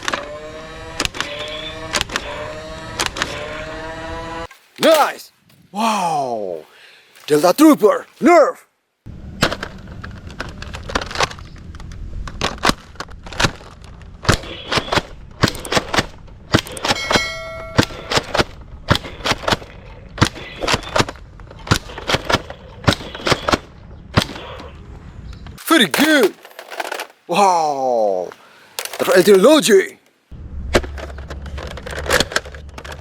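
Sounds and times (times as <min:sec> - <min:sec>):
ringing tone: 0:17.0 - 0:18.2.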